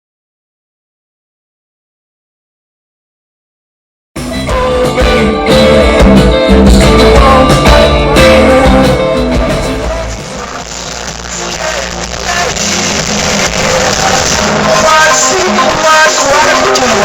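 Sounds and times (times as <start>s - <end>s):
crowd noise: 4.2s - 17.0s
live rock music with heavy bass: 4.2s - 17.0s.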